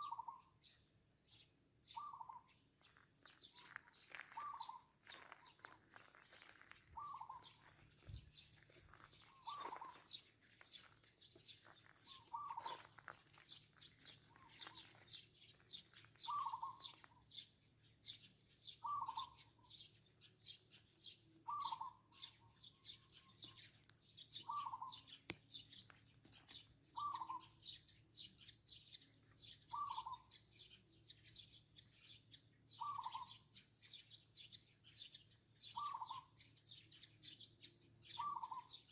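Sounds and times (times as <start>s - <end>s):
dove cooing: 0.0s - 0.5s, 3.6s - 8.2s, 8.8s - 10.2s, 11.6s - 17.4s, 18.8s - 19.8s, 21.4s - 23.7s, 24.3s - 25.2s, 26.4s - 27.8s, 29.7s - 30.4s, 32.8s - 33.4s, 35.7s - 36.3s, 38.1s - 38.8s
sparrows chirping: 0.0s - 38.9s.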